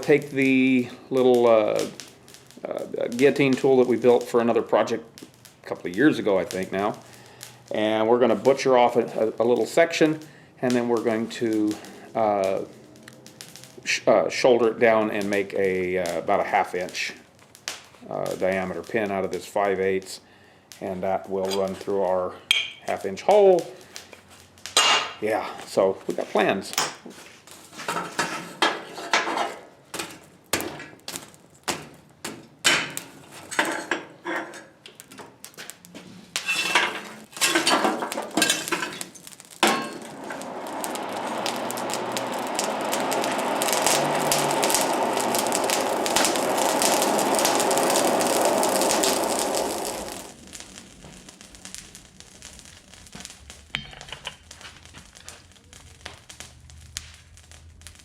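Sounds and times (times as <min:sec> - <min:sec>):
machine rushing noise: 0:39.8 - 0:50.9.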